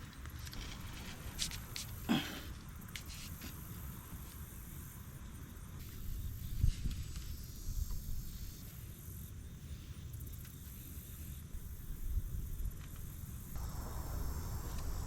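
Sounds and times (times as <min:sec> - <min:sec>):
faint insect chirping: 0:00.0 - 0:15.0
wind rumbling on microphone: 0:05.8 - 0:08.4, 0:11.6 - 0:15.0.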